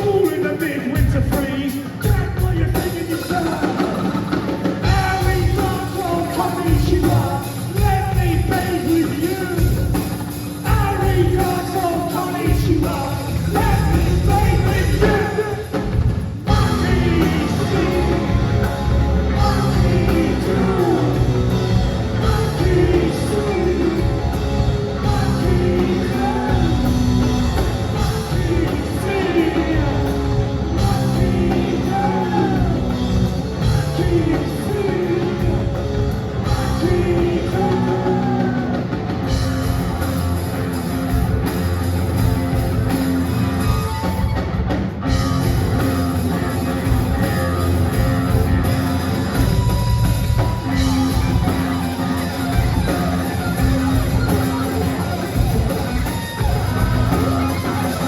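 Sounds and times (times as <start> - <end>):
rock band playing live: 0.0 - 58.0
person singing: 16.5 - 39.0.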